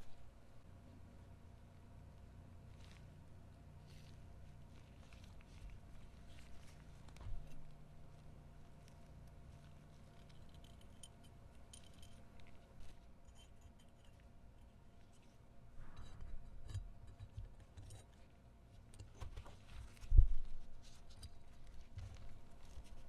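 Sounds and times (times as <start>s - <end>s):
small metal parts clinking: 10.2s - 12.6s.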